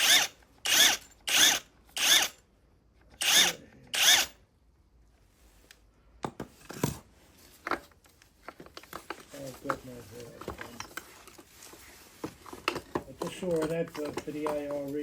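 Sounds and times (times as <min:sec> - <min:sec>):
power drill spinning: 0:00.0 - 0:02.4, 0:03.2 - 0:04.4.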